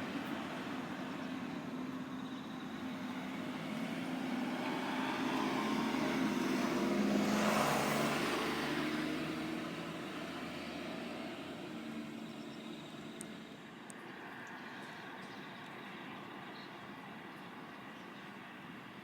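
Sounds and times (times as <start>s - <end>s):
motor vehicle passing by: 2.8s - 13.6s.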